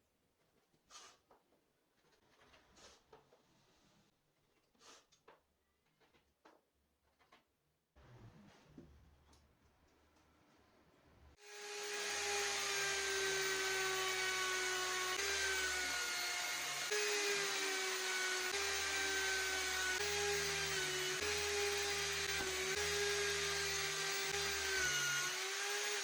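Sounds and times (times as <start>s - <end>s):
power tool motor whining: 11.4s - 26.0s.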